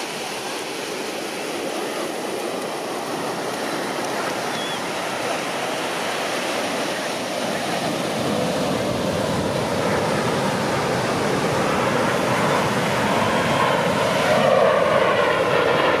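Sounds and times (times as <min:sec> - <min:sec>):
aircraft engine: 0:00.0 - 0:16.0
wind: 0:00.0 - 0:16.0.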